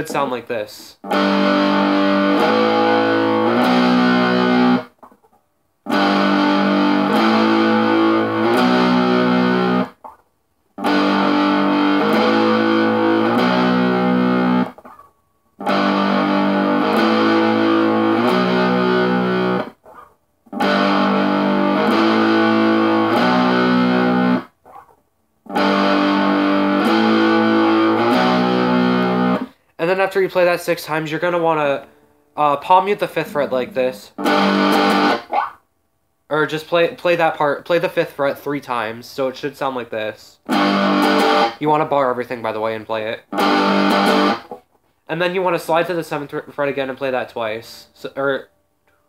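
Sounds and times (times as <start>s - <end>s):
electric guitar riff: 1.0s - 5.0s, 5.8s - 10.0s, 10.8s - 14.9s, 15.6s - 19.8s, 20.5s - 24.6s, 25.5s - 29.6s, 31.0s - 35.6s, 40.5s - 41.7s, 43.3s - 44.6s.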